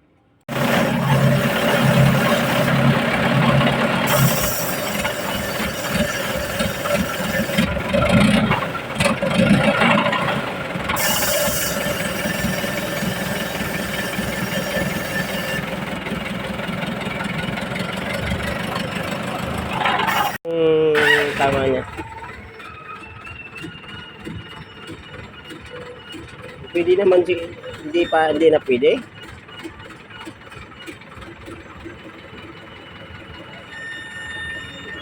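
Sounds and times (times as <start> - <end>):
diesel engine running loudly: 0.5 - 20.4, 21.0 - 35.0.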